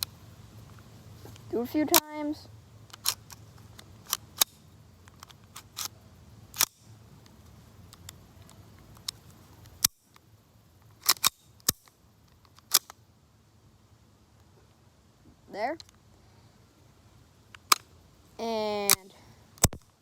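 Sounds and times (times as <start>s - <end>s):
pistol slide racking clacks: 2.9s - 5.9s, 11.0s - 11.9s, 12.5s - 13.0s.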